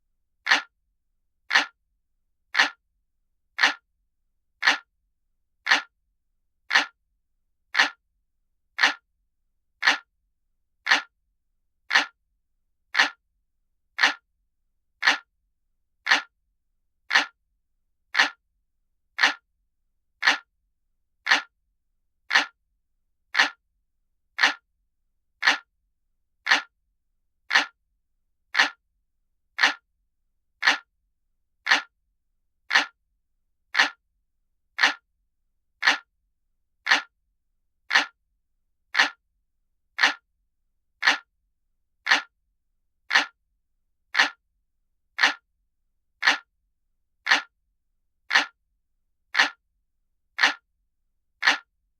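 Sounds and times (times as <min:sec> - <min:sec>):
clock ticking: 0:00.5 - 0:00.7, 0:01.5 - 0:01.8, 0:02.6 - 0:02.8, 0:03.6 - 0:03.8, 0:04.6 - 0:04.9, 0:05.7 - 0:05.9, 0:06.7 - 0:07.0, 0:07.8 - 0:08.0, 0:08.8 - 0:09.0, 0:09.8 - 0:10.1, 0:10.9 - 0:11.1, 0:11.9 - 0:12.2, 0:13.0 - 0:13.2, 0:14.0 - 0:14.2, 0:15.0 - 0:15.3, 0:16.1 - 0:16.3, 0:17.1 - 0:17.4, 0:18.2 - 0:18.4, 0:19.2 - 0:19.4, 0:20.2 - 0:20.5, 0:21.3 - 0:21.5, 0:22.3 - 0:22.6, 0:23.4 - 0:23.6, 0:24.4 - 0:24.6, 0:25.4 - 0:25.7, 0:26.5 - 0:26.7, 0:27.5 - 0:27.8, 0:28.6 - 0:28.8, 0:29.6 - 0:29.8, 0:30.6 - 0:30.9, 0:31.7 - 0:31.9, 0:32.7 - 0:33.0, 0:33.7 - 0:34.0, 0:34.8 - 0:35.0, 0:35.8 - 0:36.1, 0:36.8 - 0:37.1, 0:37.9 - 0:38.2, 0:38.9 - 0:39.2, 0:40.0 - 0:40.2, 0:41.0 - 0:41.3, 0:42.0 - 0:42.3, 0:43.1 - 0:43.4, 0:44.1 - 0:44.4, 0:45.2 - 0:45.4, 0:46.2 - 0:46.5, 0:47.2 - 0:47.5, 0:48.3 - 0:48.6, 0:49.3 - 0:49.6, 0:50.4 - 0:50.6, 0:51.4 - 0:51.7.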